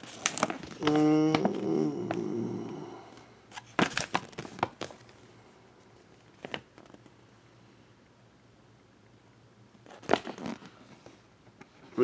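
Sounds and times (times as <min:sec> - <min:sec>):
plastic packaging crinkling: 0:00.0 - 0:01.6, 0:03.5 - 0:05.2.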